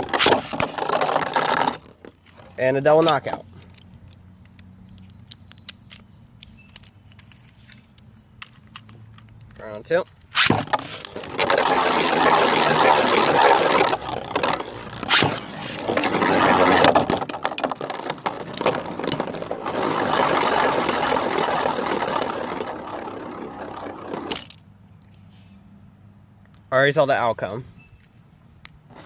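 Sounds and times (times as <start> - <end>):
spinning tops scraping and whirring: 0.0 - 5.1, 10.4 - 24.6
spinning tops clashing: 10.4 - 24.5.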